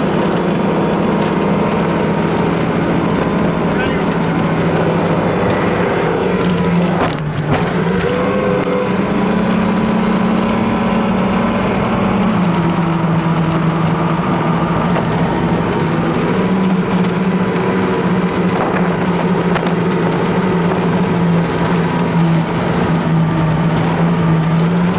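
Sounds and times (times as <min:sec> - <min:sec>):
boat engine running: 0:00.0 - 0:24.9.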